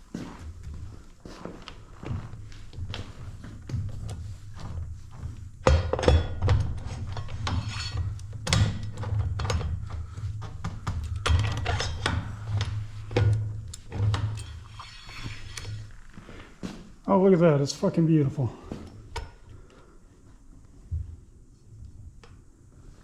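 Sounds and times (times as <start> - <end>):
steady low hum: 0.0 - 23.0
metal parts and tools clinking: 11.1 - 15.8.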